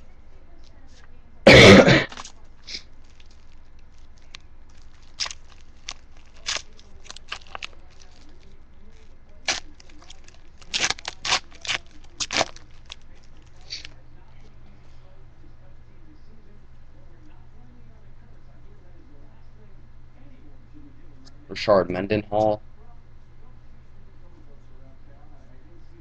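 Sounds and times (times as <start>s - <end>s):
person coughing: 1.5s - 2.2s.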